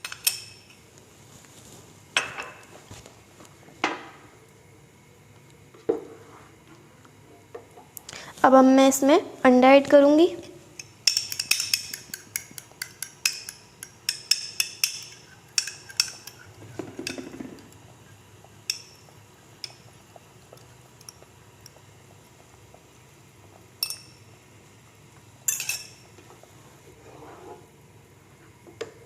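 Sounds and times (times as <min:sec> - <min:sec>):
metal utensil clinking on cookware: 0:10.8 - 0:17.3, 0:23.8 - 0:24.2, 0:25.5 - 0:26.0.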